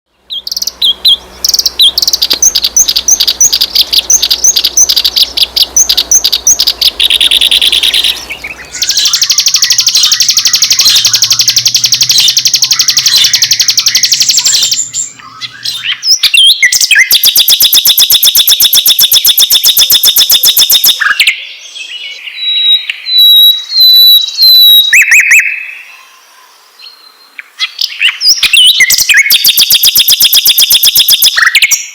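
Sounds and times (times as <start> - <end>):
rapid buzzy bird trills: 0.2 - 21.3, 27.7 - 31.9
high whistled bird notes: 0.3 - 21.4, 22.0 - 25.6, 28.2 - 31.9
repeated bird chirps: 0.3 - 21.4, 22.0 - 25.6, 27.7 - 31.9.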